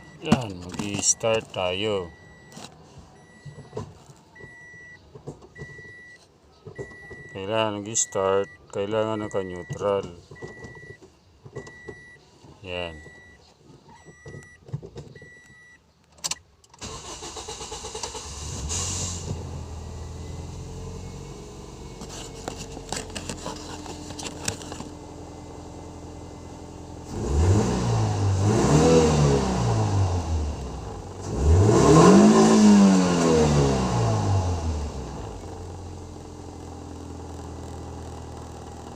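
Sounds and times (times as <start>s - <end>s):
car engine starting and idling: 0.0s - 38.9s
engine revving: 27.0s - 35.5s.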